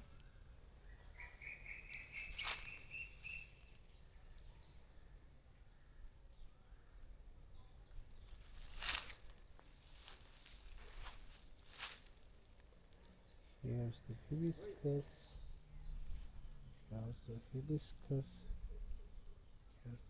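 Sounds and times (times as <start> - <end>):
insect trilling: 0.0 - 5.4
bird calling repeated notes: 1.0 - 3.6.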